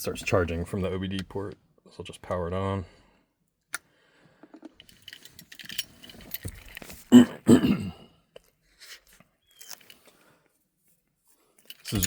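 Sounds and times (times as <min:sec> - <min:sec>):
handling clicks and rustling: 0:04.4 - 0:07.1, 0:08.3 - 0:10.6, 0:11.3 - 0:12.0.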